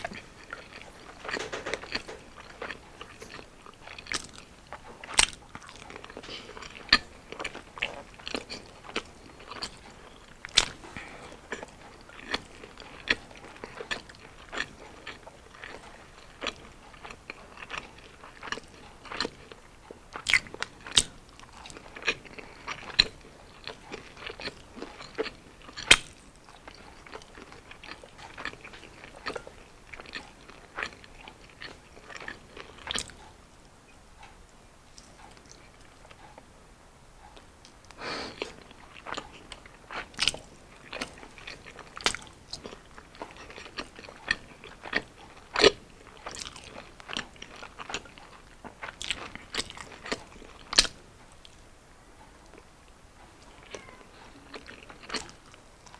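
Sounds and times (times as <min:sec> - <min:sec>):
chewing crunchy fried food: 0:00.0 - 0:55.9.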